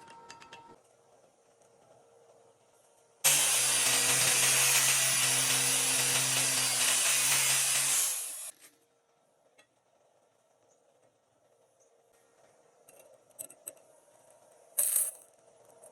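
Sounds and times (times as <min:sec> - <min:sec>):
welding arc crackling: 0:03.3 - 0:08.5.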